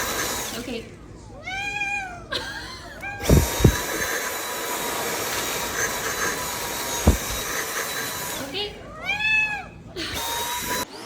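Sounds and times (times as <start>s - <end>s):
vacuum cleaner motor running: 3.2s - 8.5s
low thumps: 3.3s - 4.0s, 7.0s - 7.5s.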